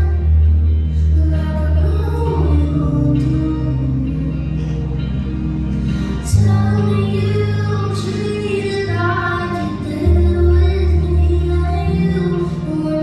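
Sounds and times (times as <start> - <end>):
deep bass notes: 0.0 - 13.0
woman singing over backing track: 0.0 - 13.0.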